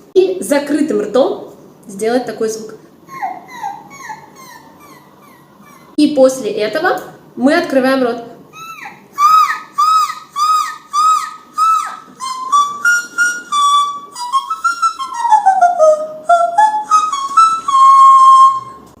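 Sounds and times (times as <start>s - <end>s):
woman singing in whistle register: 12.2s - 18.8s.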